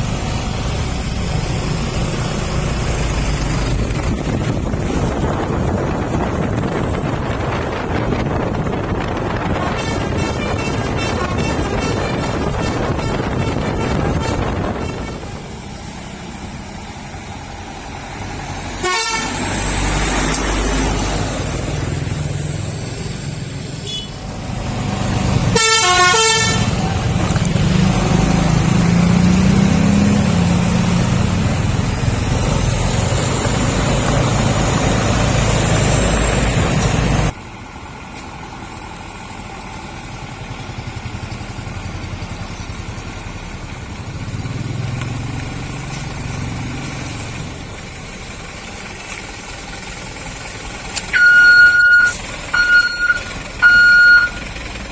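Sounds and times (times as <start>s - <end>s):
diesel truck engine: 0.0s - 54.9s
warbling air horn blasts: 18.8s - 19.4s, 25.5s - 26.8s.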